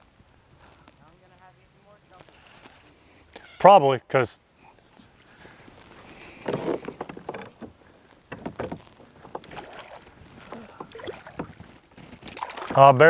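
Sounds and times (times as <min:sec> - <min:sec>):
knocks on a kayak: 0:08.3 - 0:09.6.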